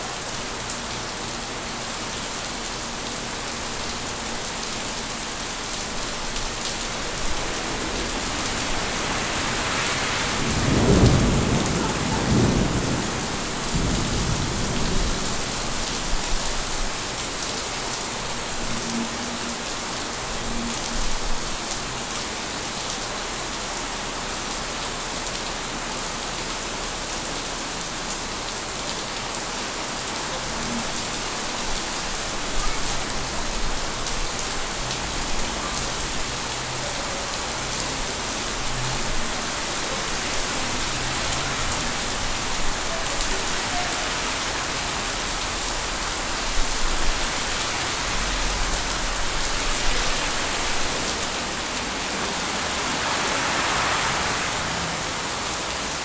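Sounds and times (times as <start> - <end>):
heavy rain falling: 0.0 - 56.0
thunder rumbling: 6.0 - 17.1.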